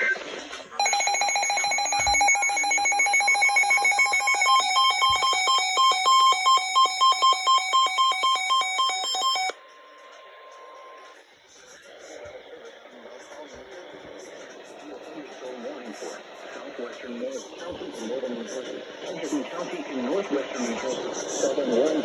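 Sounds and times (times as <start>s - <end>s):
rapid electronic beeping: 0.8s - 9.6s.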